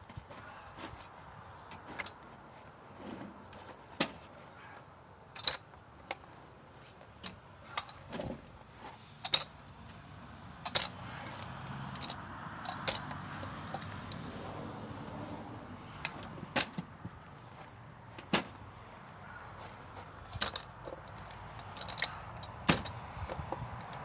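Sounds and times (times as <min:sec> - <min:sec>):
sharp metallic clinks: 0:10.6 - 0:11.0, 0:12.0 - 0:13.2, 0:21.6 - 0:23.0.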